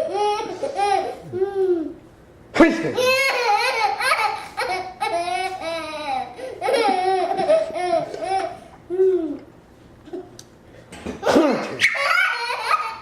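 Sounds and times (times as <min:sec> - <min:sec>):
child squealing: 0:11.8 - 0:13.0.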